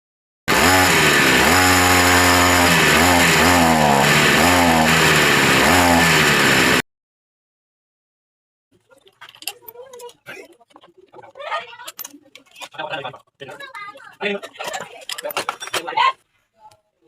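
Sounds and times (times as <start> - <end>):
chainsaw engine revving: 0.5 - 6.8.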